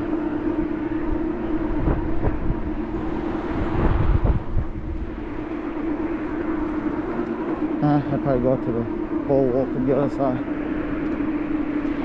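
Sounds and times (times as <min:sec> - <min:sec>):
steady humming drone: 0:00.0 - 0:12.0
wind buffeting microphone: 0:00.0 - 0:12.0.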